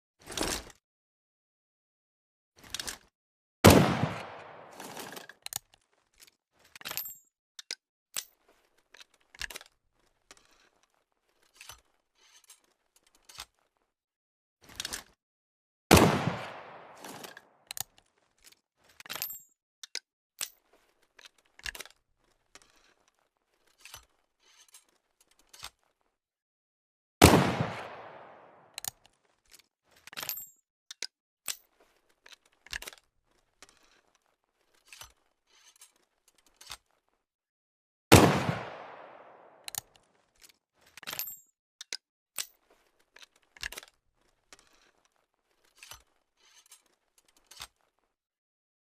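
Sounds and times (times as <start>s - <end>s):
pistol shot with echo: 3.6s - 4.8s, 15.9s - 17.0s, 27.2s - 28.6s, 38.1s - 39.6s
pistol lock clicks and scrapes: 4.8s - 13.7s, 17.0s - 25.9s, 28.7s - 37.1s, 39.5s - 48.0s.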